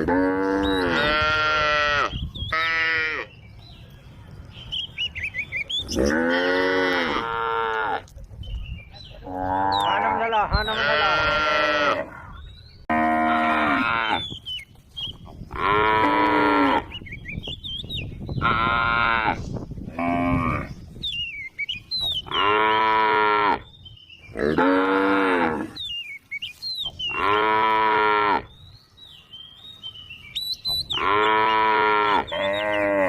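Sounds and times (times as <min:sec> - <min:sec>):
cattle mooing: 0:00.0 - 0:03.3, 0:05.9 - 0:08.0, 0:09.3 - 0:12.3, 0:30.9 - 0:33.0.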